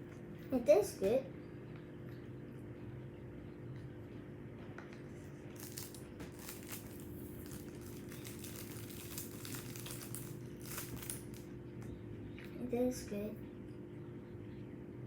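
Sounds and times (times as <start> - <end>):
steady low hum: 0.0 - 15.0
plastic cup crinkling and clicking: 5.5 - 11.4.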